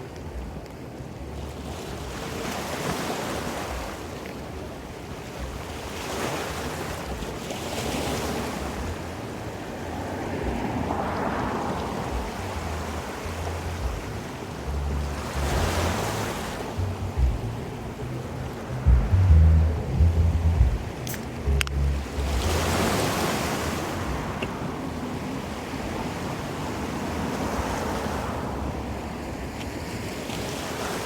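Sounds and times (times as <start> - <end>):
ocean surf breaking: 1.2 - 31.0
wind buffeting microphone: 8.3 - 30.9.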